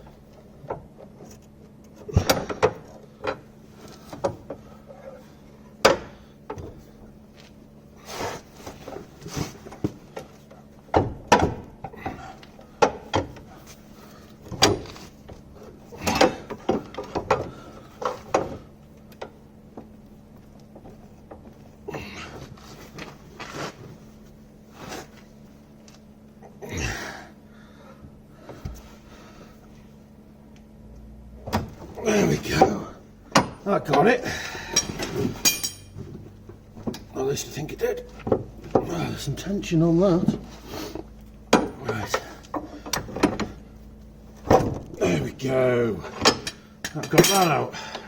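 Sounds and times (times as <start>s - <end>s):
hand tools knocking on metal: 34.8s - 36.0s.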